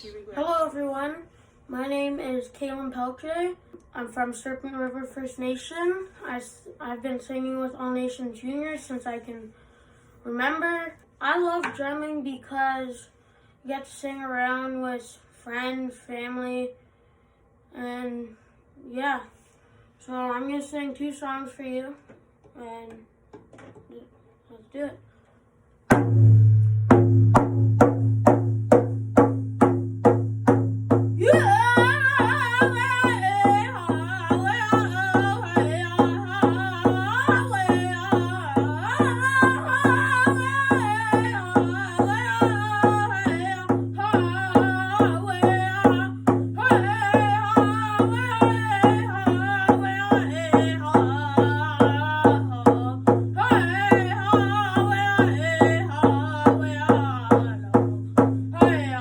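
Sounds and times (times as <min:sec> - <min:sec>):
steady drumbeat: 0:25.9 - 0:59.0
high voice singing: 0:31.2 - 0:57.8.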